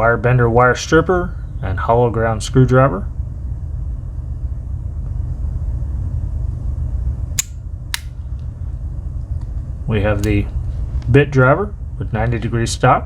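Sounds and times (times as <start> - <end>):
steady low hum: 0.0 - 13.0
pocket knife tools snapping: 7.4 - 8.2.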